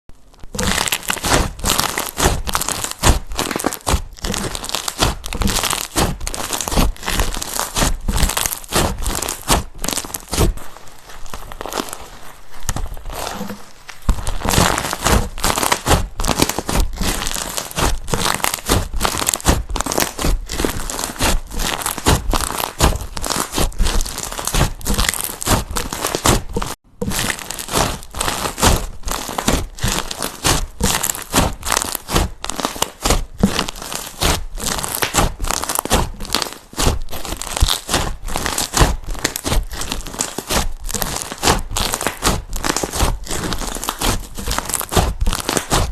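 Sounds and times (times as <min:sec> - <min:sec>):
slime crackling and crunching: 0:00.1 - 0:45.9.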